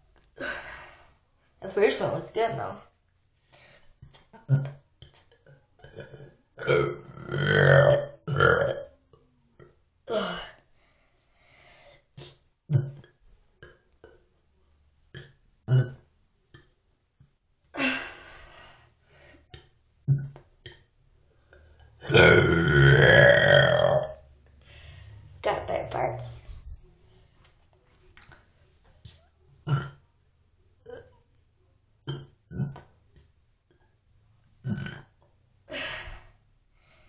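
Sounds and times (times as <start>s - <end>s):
person burping: 4.4s - 4.8s, 5.8s - 8.9s, 10.1s - 10.6s, 12.7s - 13.0s, 15.2s - 16.1s, 22.0s - 24.2s, 29.6s - 30.0s, 30.8s - 31.1s, 32.1s - 32.8s, 34.6s - 35.2s.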